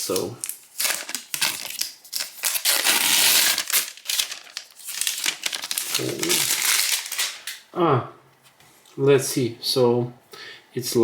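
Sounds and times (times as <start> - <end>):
packaging crinkling and rustling: 0.0 - 7.6.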